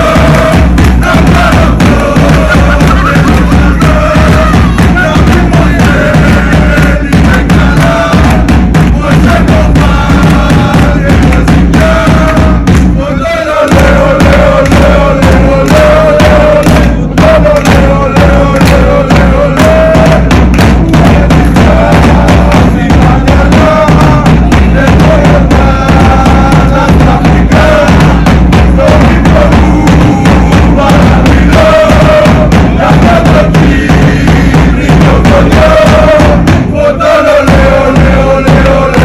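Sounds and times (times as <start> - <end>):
bass drum and snare beating: 0.0 - 39.0
held pitched melody: 1.0 - 6.6.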